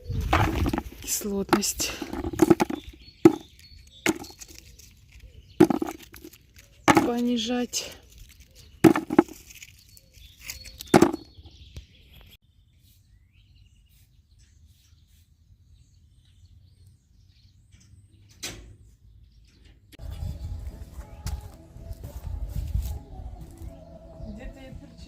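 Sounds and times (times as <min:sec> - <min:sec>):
sharp knocks and cracks: 0:00.2 - 0:04.8, 0:05.6 - 0:07.4, 0:08.8 - 0:09.7, 0:10.4 - 0:11.4.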